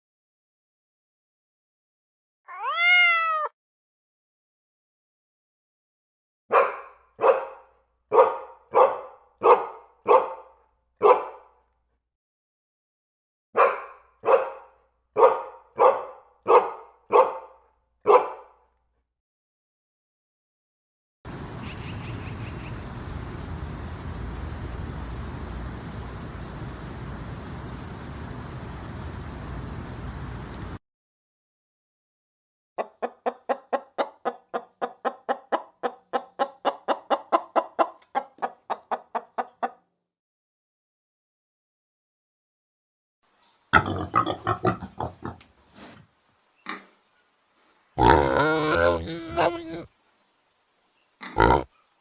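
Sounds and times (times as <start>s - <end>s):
dog barking: 6.5s - 11.6s, 13.6s - 18.7s
chicken clucking: 21.4s - 22.9s, 32.8s - 39.8s.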